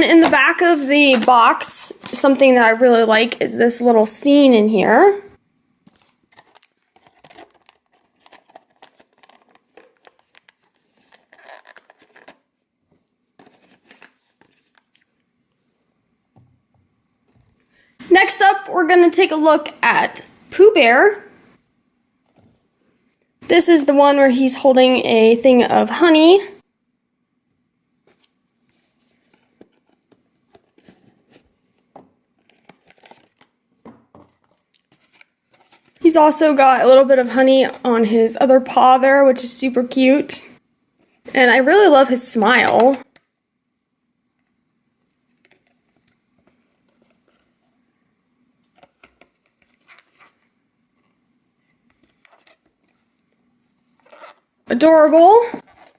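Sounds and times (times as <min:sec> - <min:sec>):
toy packaging crinkling: 0:00.0 - 0:02.5, 0:05.9 - 0:12.5, 0:32.4 - 0:33.6.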